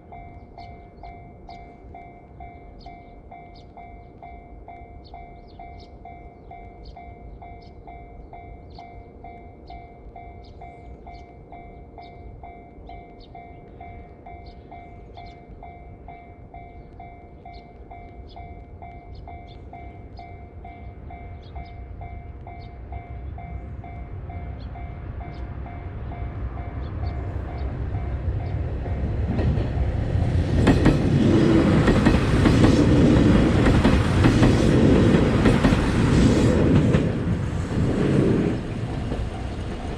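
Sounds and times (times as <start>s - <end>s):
train wheels clattering: 27.4s - 39.9s.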